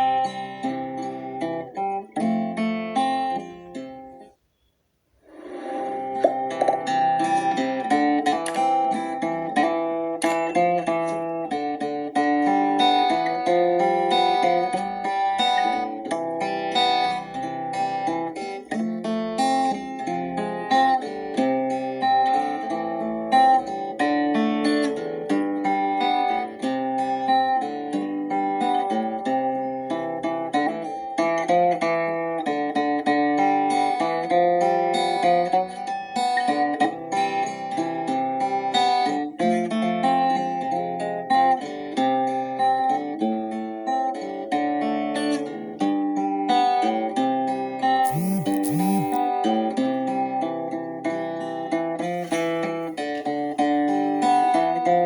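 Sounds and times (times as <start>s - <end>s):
plucked guitar picking notes: 6.2s - 13.7s.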